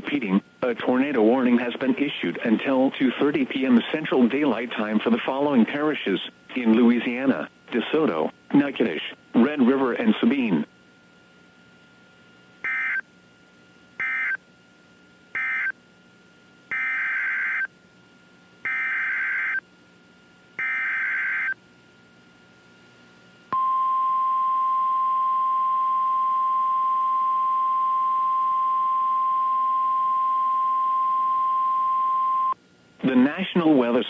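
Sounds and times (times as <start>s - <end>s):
alert data bursts: 14.0s - 14.4s, 15.4s - 15.7s, 16.7s - 17.7s, 18.7s - 19.6s, 20.6s - 21.6s
steady single-pitch alert tone: 14.0s - 14.4s, 15.4s - 15.7s, 20.6s - 21.6s, 23.6s - 32.6s.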